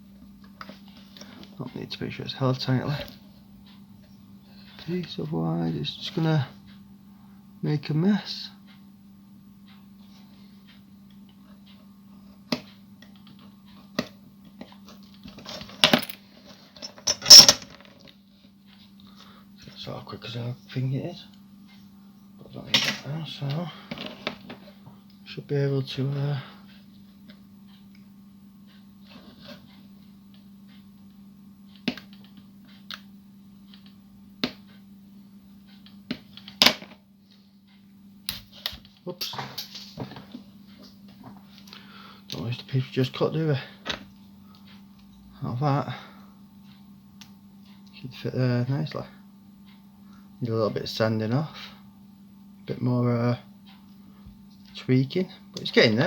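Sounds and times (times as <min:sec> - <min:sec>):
steady low hum: 0:00.0 - 0:56.0
hand tools clicking and clattering: 0:15.4 - 0:17.7.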